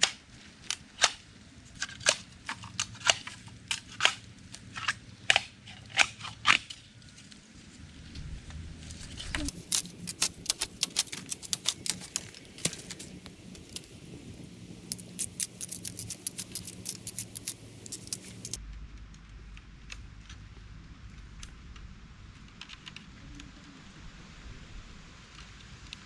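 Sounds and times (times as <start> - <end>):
quick sharp clicks: 9.4 - 14.0, 14.9 - 18.6.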